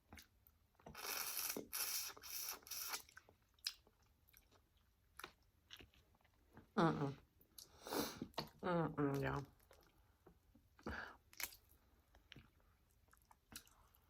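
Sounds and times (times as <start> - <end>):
loud slurping: 1.0 - 3.1.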